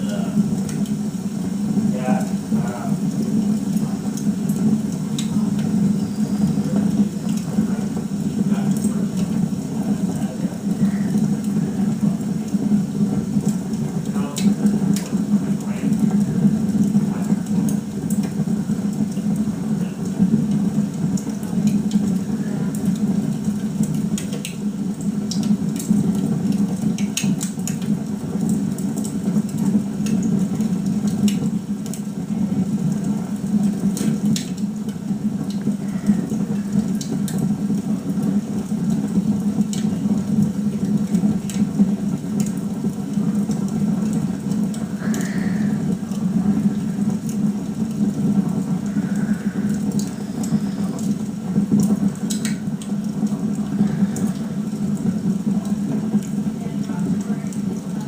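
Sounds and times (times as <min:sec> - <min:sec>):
log fire crackling and popping: 0:00.0 - 0:58.0.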